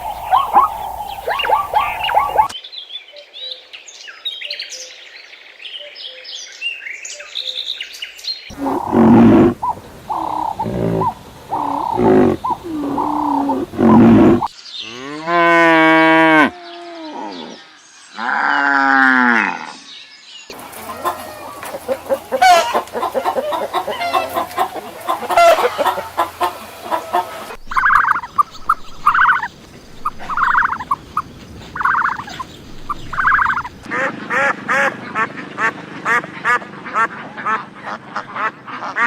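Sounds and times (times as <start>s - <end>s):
chickens clucking: 0.0s - 2.6s, 8.5s - 14.5s, 20.5s - 39.0s
cattle mooing: 8.5s - 16.5s.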